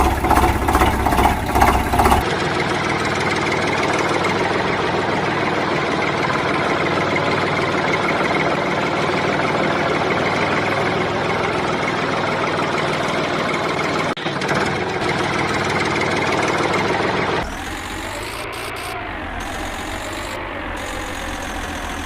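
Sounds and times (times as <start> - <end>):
toy vehicle motor running: 0.0 - 2.2, 17.4 - 22.0.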